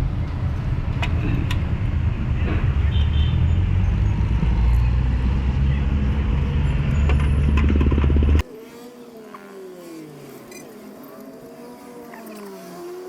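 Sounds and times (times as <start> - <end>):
vehicle engine running: 0.0 - 8.4.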